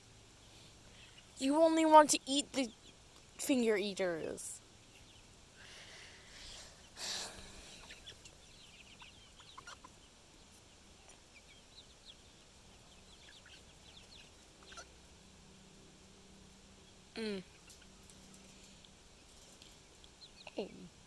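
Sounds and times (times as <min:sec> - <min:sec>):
chickens clucking: 0:04.3 - 0:15.4, 0:16.8 - 0:20.9.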